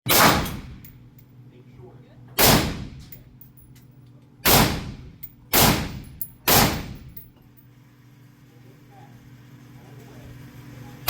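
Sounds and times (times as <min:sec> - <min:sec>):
gunshots with echo: 0:00.1 - 0:00.8, 0:02.4 - 0:03.0, 0:04.5 - 0:07.1.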